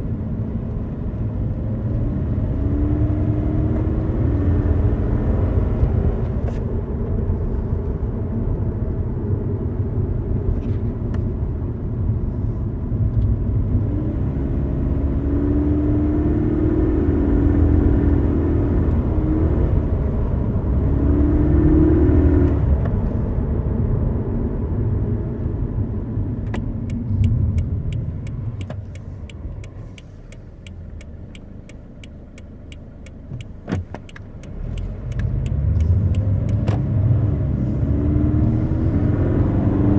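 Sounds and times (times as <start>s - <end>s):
car cabin road rumble: 0.0s - 39.9s
engine droning: 0.0s - 39.9s
regular clicking: 26.5s - 37.3s.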